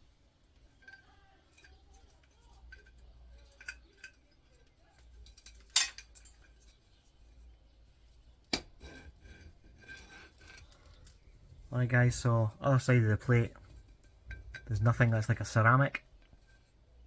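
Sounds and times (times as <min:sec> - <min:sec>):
small metallic clicks and scrapes: 0:00.4 - 0:07.5, 0:08.6 - 0:11.4, 0:13.2 - 0:17.0.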